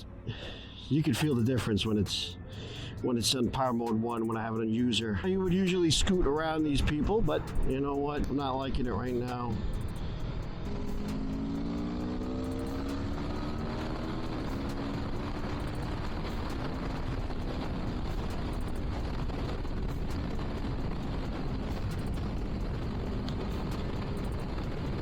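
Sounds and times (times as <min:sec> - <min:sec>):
wind and road noise: 0:00.0 - 0:25.0
motorcycle engine accelerating: 0:09.5 - 0:25.0.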